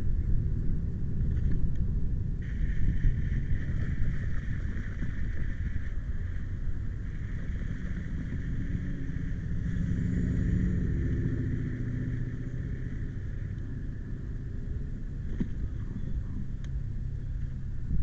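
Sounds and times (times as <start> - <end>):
wind on microphone: 0.0 - 18.0
vehicle passing with engine hum: 2.4 - 17.9.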